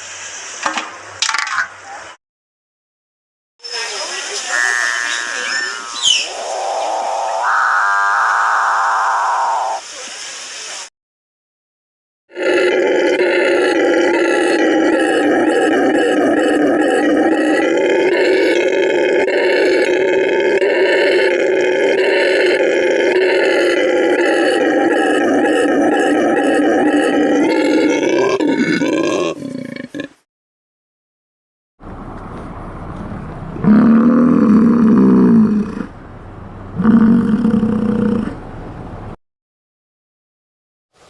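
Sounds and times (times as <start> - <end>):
howler monkey roaring: 4.5 - 9.8, 12.3 - 30.2, 33.6 - 36.0, 36.8 - 38.4.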